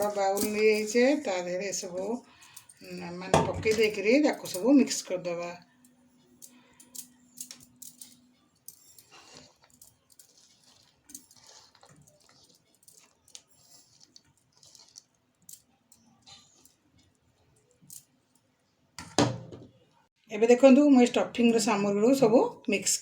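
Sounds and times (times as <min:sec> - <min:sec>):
vegetables mixed in bowl: 0:00.0 - 0:02.2, 0:07.7 - 0:17.6.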